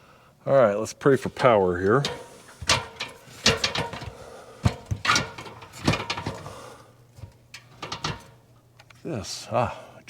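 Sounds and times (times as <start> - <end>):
sharp clicks and knocks: 7.2 - 9.0.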